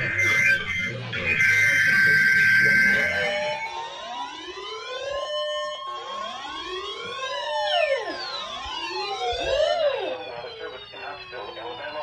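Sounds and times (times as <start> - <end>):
weather radio alert tone: 0.0 - 4.2
sirens wailing: 0.0 - 12.0.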